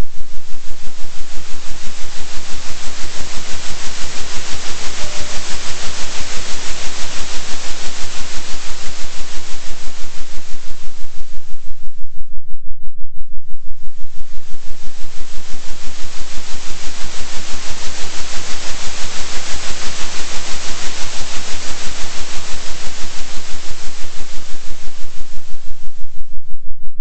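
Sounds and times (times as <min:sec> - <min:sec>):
hiss of noise: 0:00.0 - 0:12.0, 0:13.7 - 0:26.4
pulsing deep low tone: 0:10.3 - 0:15.4, 0:25.2 - 0:27.0.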